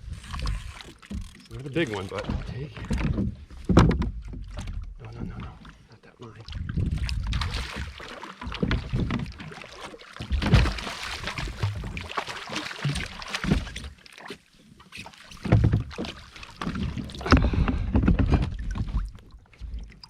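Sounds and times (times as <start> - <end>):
water splashing: 0.0 - 3.1, 4.2 - 20.0
knocks on a kayak: 2.2 - 4.5.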